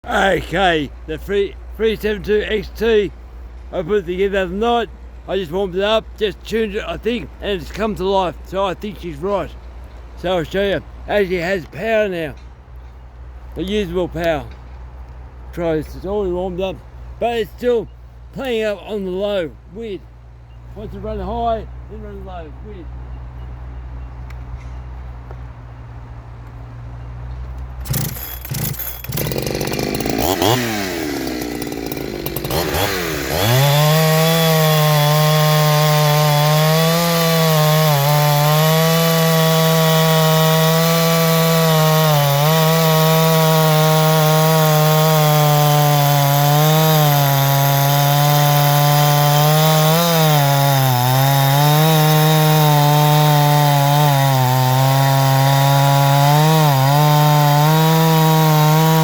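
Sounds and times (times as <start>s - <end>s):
chainsaw revving: 27.8s - 59.0s.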